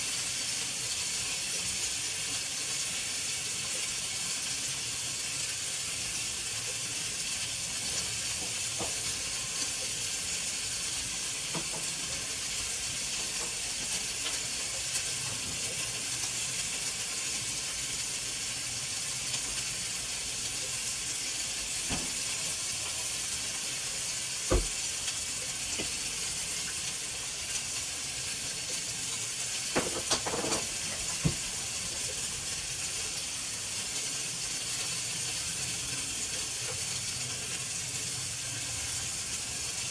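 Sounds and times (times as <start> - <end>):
cooking hiss on stove: 0.0 - 39.9.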